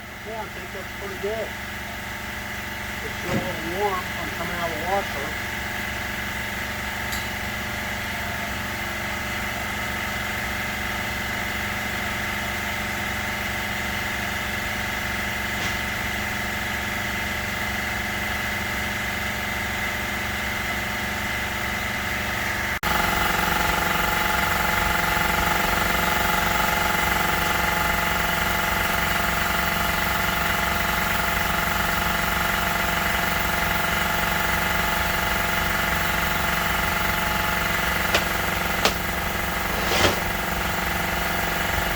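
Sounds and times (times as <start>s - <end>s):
shop machinery humming: 0.0s - 10.2s, 13.7s - 17.4s, 22.9s - 41.9s.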